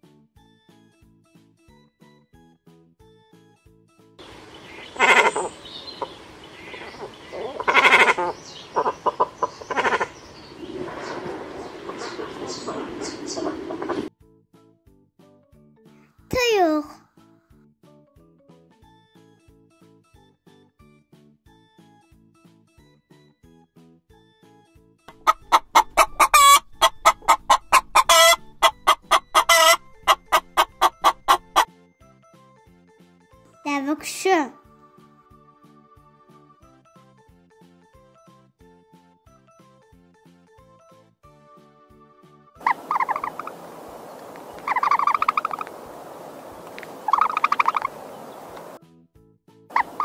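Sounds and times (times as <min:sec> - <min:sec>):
short bird notes: 0:04.2 - 0:13.9, 0:46.9 - 0:48.8
harsh drawn-out bird calls: 0:04.2 - 0:14.1, 0:25.1 - 0:31.7, 0:42.6 - 0:48.8, 0:49.7 - 0:50.0
hen cackling: 0:04.2 - 0:14.1, 0:25.1 - 0:31.7, 0:42.6 - 0:48.8, 0:49.7 - 0:50.0
hen clucking: 0:04.2 - 0:14.1, 0:25.1 - 0:31.7, 0:42.6 - 0:48.8, 0:49.7 - 0:50.0.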